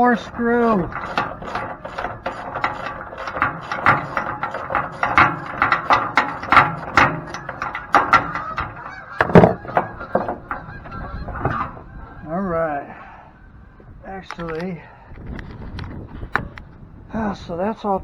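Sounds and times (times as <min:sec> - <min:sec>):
screw squeaking and clicking: 0:00.0 - 0:11.9.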